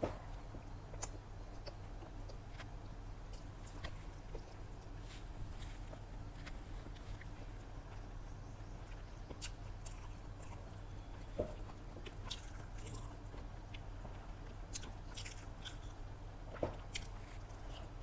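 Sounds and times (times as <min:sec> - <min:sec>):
low electrical hum: 0:00.0 - 0:18.0
wet chewing smacks: 0:08.8 - 0:13.9, 0:14.5 - 0:16.0, 0:16.8 - 0:18.0.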